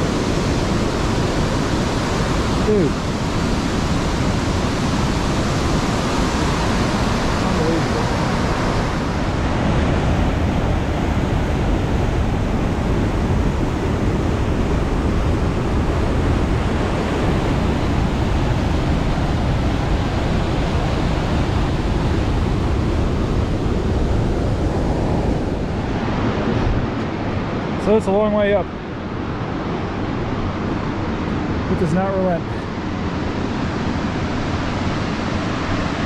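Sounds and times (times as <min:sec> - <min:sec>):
wind buffeting microphone: 0:00.0 - 0:31.8
rushing whitewater roar: 0:00.0 - 0:36.0.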